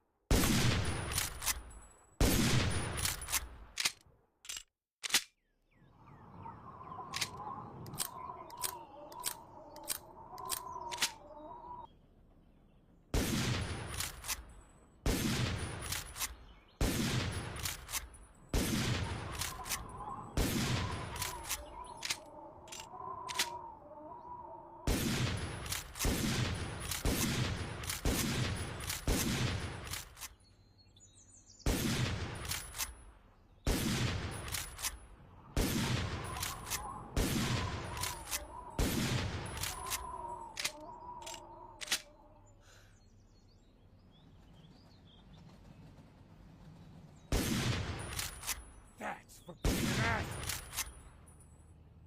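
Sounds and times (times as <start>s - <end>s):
rifle shots echoing: 0.3s - 3.8s, 13.1s - 23.5s, 24.9s - 30.2s, 31.6s - 33.1s, 33.7s - 42.1s, 46.5s - 48.9s, 49.6s - 51.1s
rifle lever clicks: 3.0s - 5.4s, 7.1s - 11.2s, 21.2s - 23.6s, 38.0s - 38.6s, 39.5s - 42.1s.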